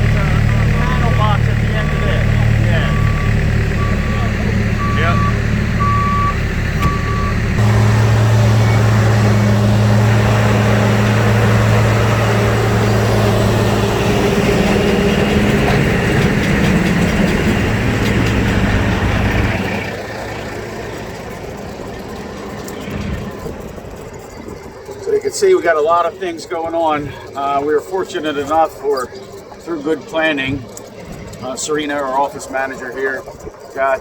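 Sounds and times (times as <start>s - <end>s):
vehicle reversing alarm beeping: 0.0s - 19.6s
heavy construction vehicle engine: 0.0s - 34.0s.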